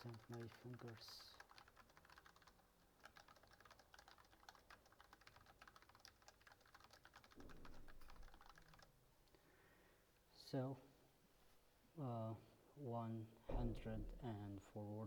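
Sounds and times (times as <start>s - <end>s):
fast typing on keyboard: 0.0s - 9.0s.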